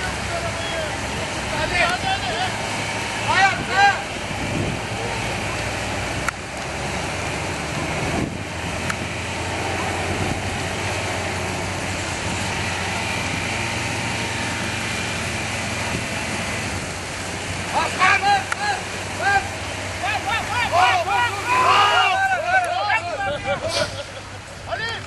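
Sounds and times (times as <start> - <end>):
vehicle engine running: 0.0 - 22.5
broad rushing noise: 0.0 - 25.0.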